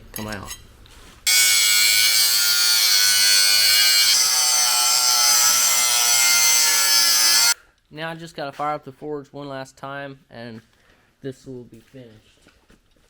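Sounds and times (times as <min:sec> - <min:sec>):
power tool cutting metal bar: 0:01.3 - 0:07.6.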